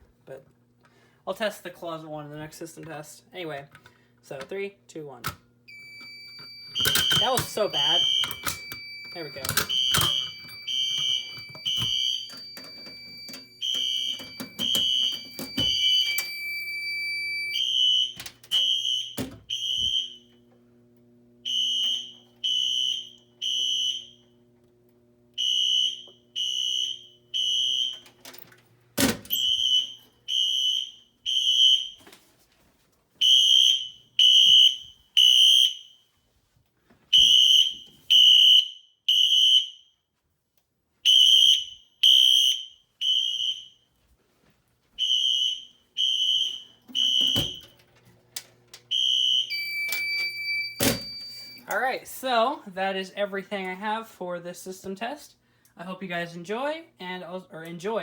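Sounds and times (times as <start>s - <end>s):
steady high tone: 5.7s - 17.7s
fire alarm horn beeps: 5.7s - 20.4s, 21.4s - 24.4s, 25.3s - 28.2s, 29.3s - 32.0s, 33.2s - 36.1s, 37.1s - 40.0s, 41.0s - 43.8s, 45.0s - 47.8s, 48.9s - 51.9s.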